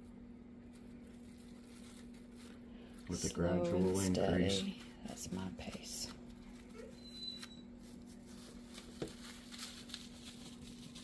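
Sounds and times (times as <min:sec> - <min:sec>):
plastic food wrap rustling: 0:00.0 - 0:11.0
steady low hum: 0:00.0 - 0:11.0.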